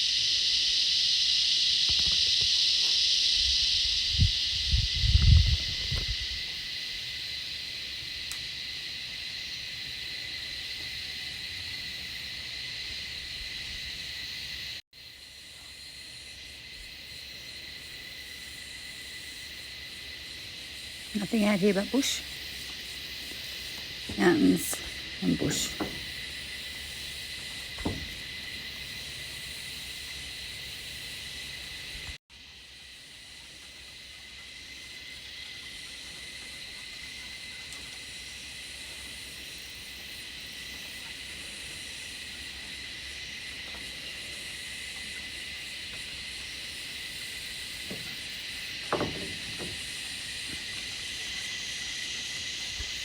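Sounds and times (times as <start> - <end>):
cicadas buzzing: 0.0 - 53.0.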